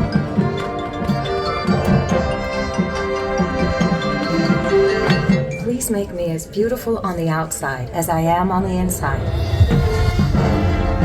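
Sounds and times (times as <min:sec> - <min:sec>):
drum and percussion hits: 0:00.0 - 0:05.8, 0:09.2 - 0:11.0
marching band playing: 0:00.0 - 0:06.4, 0:09.0 - 0:11.0.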